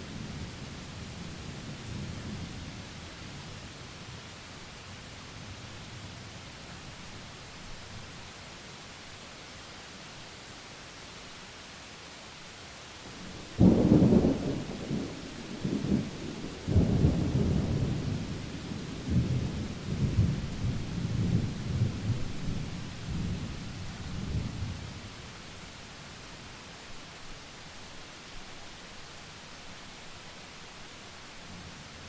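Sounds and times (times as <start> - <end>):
rain hissing: 0.0 - 32.0
thunder rumbling: 13.2 - 23.6.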